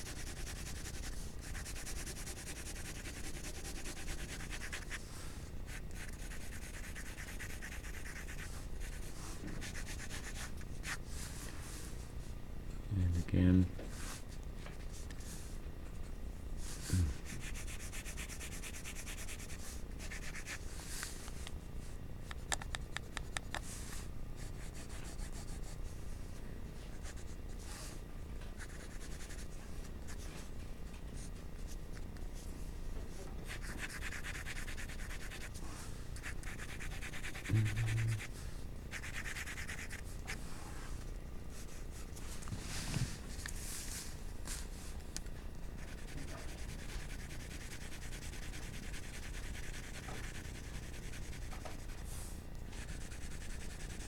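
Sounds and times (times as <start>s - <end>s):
low steady hum: 0.0s - 54.0s
pencil shading on paper: 36.2s - 38.3s, 45.8s - 51.8s
low thumps: 37.5s - 38.3s.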